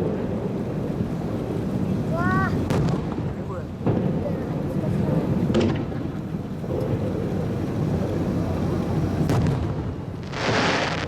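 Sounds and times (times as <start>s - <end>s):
low rumble of fireworks bursts: 0.0s - 11.0s
fireworks booming: 2.5s - 11.0s.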